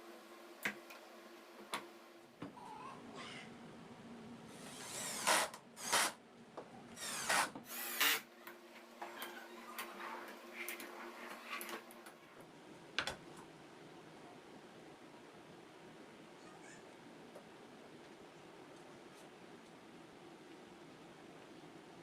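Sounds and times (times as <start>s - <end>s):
power drill bursts: 4.6s - 6.2s, 7.0s - 8.2s.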